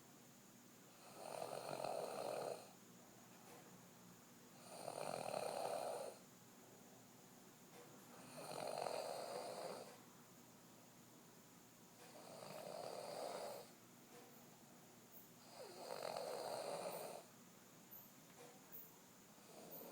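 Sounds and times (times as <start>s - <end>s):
woman snoring: 1.0s - 2.7s, 4.6s - 6.2s, 8.2s - 9.9s, 12.1s - 13.7s, 15.4s - 17.3s.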